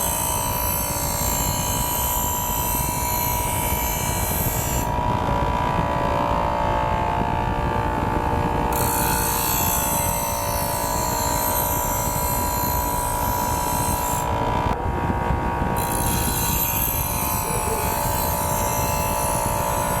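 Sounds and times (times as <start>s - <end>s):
power tool whining: 0.0s - 20.0s.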